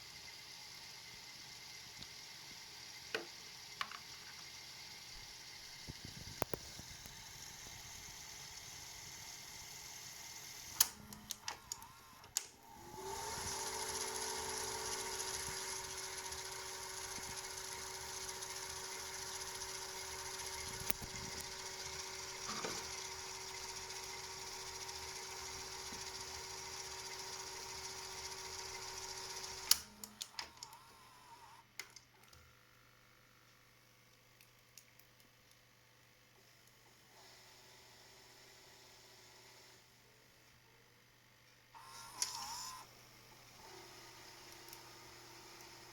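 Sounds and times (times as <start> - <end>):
tape drive whirring: 1.0 - 31.7, 41.8 - 45.9
tape mechanism clicking: 10.7 - 23.1, 28.7 - 30.8.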